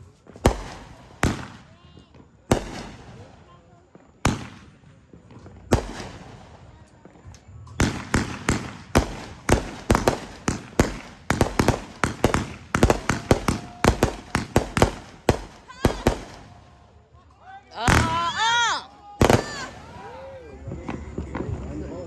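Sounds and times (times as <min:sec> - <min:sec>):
firework bang: 0:00.0 - 0:01.7, 0:05.7 - 0:06.7, 0:17.9 - 0:21.5
rapid firework cracks: 0:00.0 - 0:03.6, 0:04.2 - 0:07.1, 0:07.8 - 0:16.8, 0:17.9 - 0:20.5.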